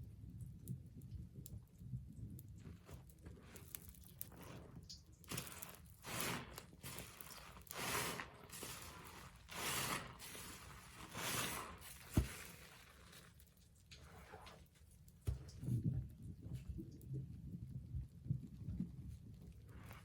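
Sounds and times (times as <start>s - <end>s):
sponge squeezed wet squelches: 2.7s - 15.7s.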